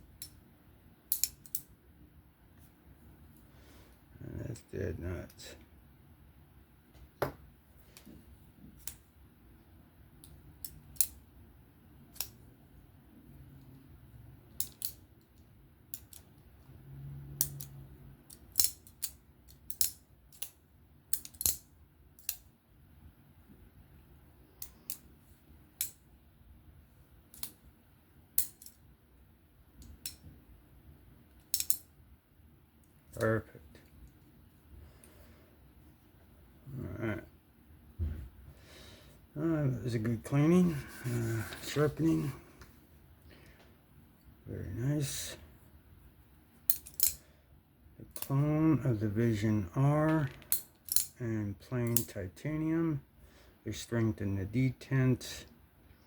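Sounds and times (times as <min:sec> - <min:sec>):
folding knife clicking open and shut: 0:01.1 - 0:01.7, 0:31.5 - 0:31.8.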